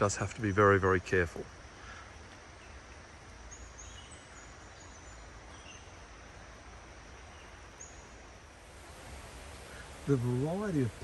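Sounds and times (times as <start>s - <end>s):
creek water rushing: 4.2s - 11.0s.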